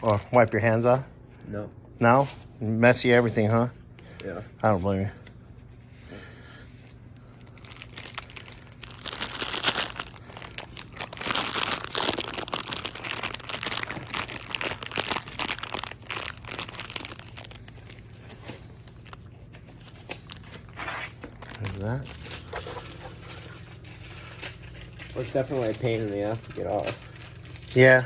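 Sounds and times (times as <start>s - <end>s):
crinkling scraping handling noise: 17.5s - 28.0s.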